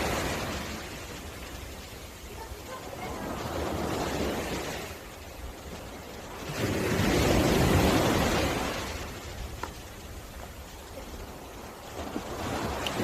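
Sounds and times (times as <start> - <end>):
ocean wave washing onto beach: 0.0 - 13.0.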